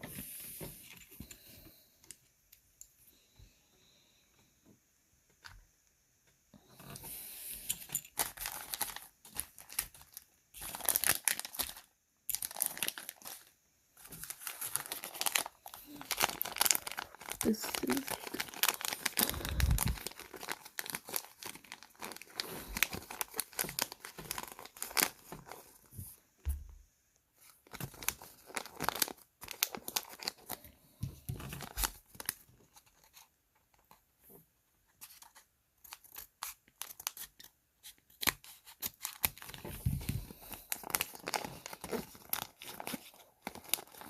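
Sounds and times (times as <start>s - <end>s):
plastic packaging crinkling: 7.7s - 26.1s, 27.4s - 30.6s, 31.3s - 33.2s, 38.1s - 44.0s.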